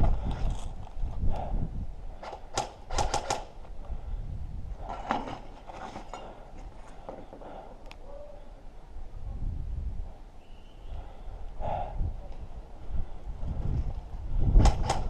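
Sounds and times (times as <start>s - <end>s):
sharp clicks: 2.2s - 3.5s.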